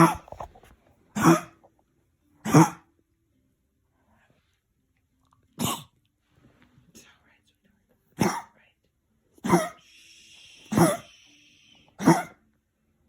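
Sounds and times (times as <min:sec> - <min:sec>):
dog coughing: 0:00.0 - 0:00.4, 0:01.2 - 0:01.6, 0:02.4 - 0:02.9, 0:05.6 - 0:06.0, 0:08.2 - 0:08.6, 0:09.4 - 0:09.8, 0:10.7 - 0:11.1, 0:12.0 - 0:12.4.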